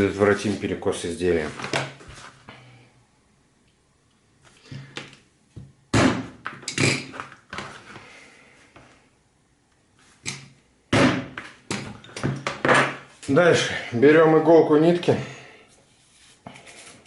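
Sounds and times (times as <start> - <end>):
hammer striking leather punch: 5.9 - 6.3, 10.9 - 11.4.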